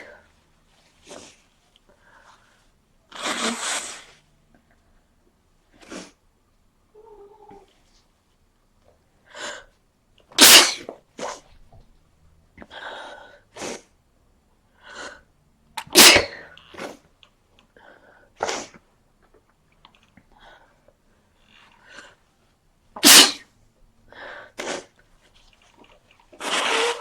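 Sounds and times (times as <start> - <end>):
person sneezing: 10.4 - 11.4, 15.8 - 17.0, 18.4 - 18.8, 23.0 - 23.4, 26.4 - 27.0.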